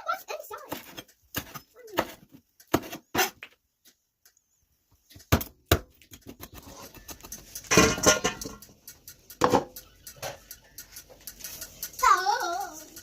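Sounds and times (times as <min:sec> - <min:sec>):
sharp knocks and clacks: 0:05.1 - 0:12.1.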